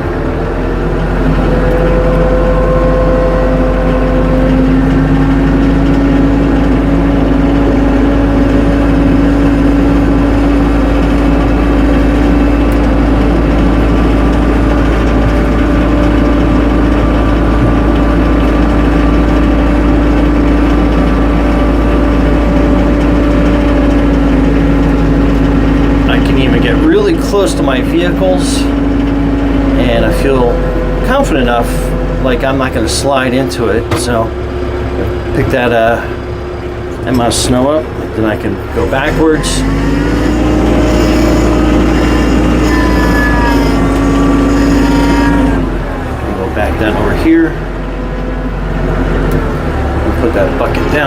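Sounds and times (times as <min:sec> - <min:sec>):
steady whine: 0:00.0 - 0:51.0
tractor engine running: 0:00.0 - 0:51.0.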